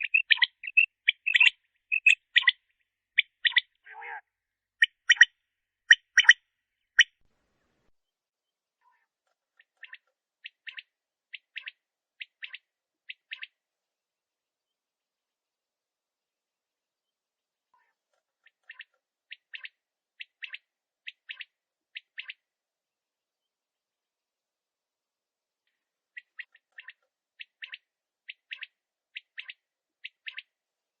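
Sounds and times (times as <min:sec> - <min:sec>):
quail calling: 0:00.0 - 0:02.6, 0:03.2 - 0:04.2, 0:04.8 - 0:05.3, 0:05.9 - 0:06.4.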